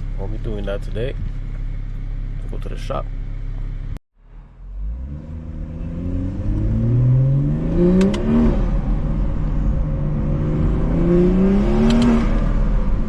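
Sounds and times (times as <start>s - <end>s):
car engine accelerating: 3.4s - 13.0s
exhaust crackles: 4.7s - 13.0s.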